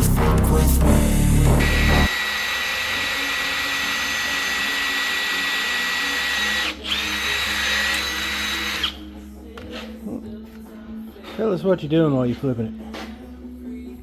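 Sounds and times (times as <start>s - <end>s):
electric drill whining: 1.6s - 10.0s.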